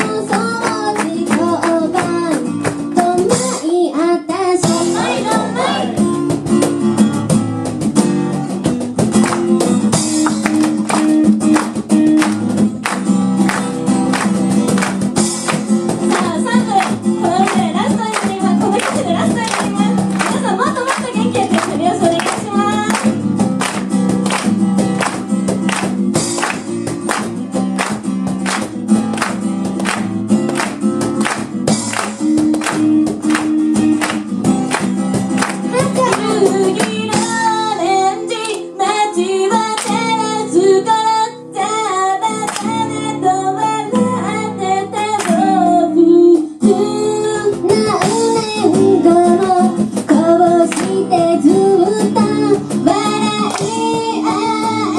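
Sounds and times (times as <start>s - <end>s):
women singing: 0.0s - 6.1s, 16.1s - 23.1s, 35.7s - 54.9s
acoustic guitar playing: 0.0s - 54.9s.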